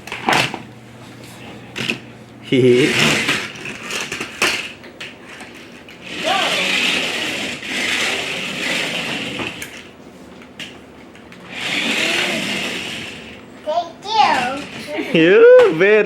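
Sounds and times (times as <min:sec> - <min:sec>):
toy electric motor whirring: 0:02.6 - 0:04.7, 0:05.3 - 0:09.9, 0:11.3 - 0:13.4, 0:14.1 - 0:15.2.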